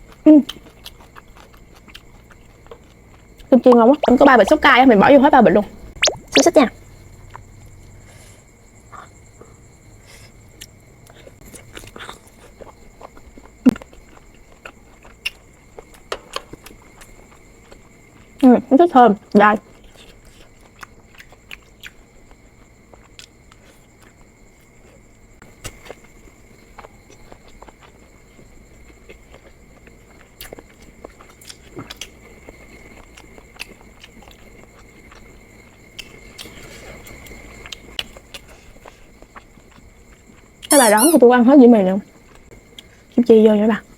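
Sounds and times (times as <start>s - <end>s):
person chewing noodles: 0.0s - 3.5s, 10.6s - 18.4s, 19.7s - 22.3s, 25.6s - 40.9s.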